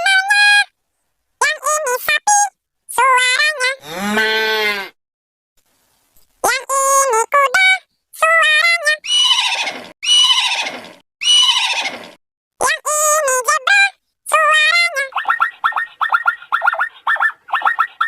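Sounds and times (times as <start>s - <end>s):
high-pitched cartoon singing voice: 0.0s - 0.7s, 1.4s - 4.0s, 6.4s - 9.1s, 12.6s - 18.0s
horse whinnying: 3.8s - 5.0s, 9.0s - 12.2s.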